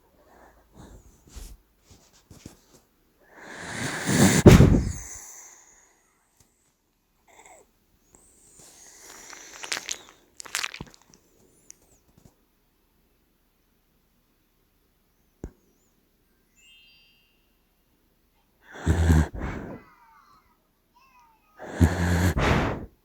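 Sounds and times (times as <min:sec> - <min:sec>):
puppy snoring: 0:03.4 - 0:05.2, 0:18.7 - 0:19.9, 0:21.6 - 0:23.0
whistling breath: 0:03.4 - 0:06.3, 0:16.5 - 0:17.7, 0:21.7 - 0:23.0.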